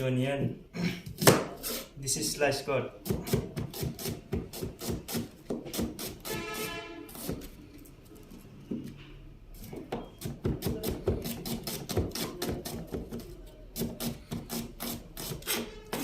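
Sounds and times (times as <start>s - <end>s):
knife chopping onion on board: 3.0s - 7.5s, 10.0s - 16.0s.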